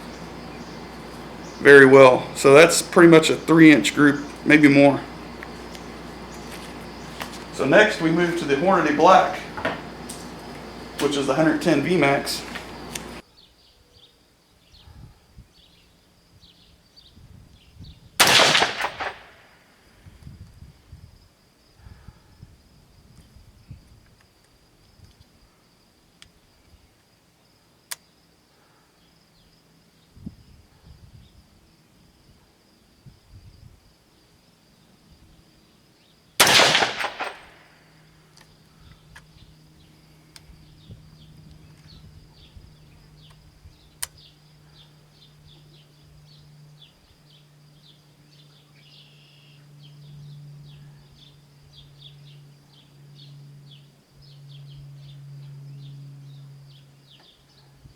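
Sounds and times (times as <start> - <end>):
low steady hum: 0.0 - 13.2
insects chirping: 0.0 - 57.9
rifle shot: 18.2 - 19.5, 36.4 - 37.7.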